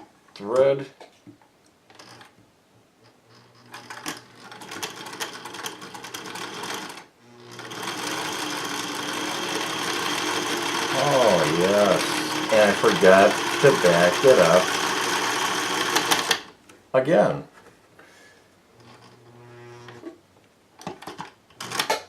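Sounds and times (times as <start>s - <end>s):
sewing machine stitching: 3.3s - 16.5s.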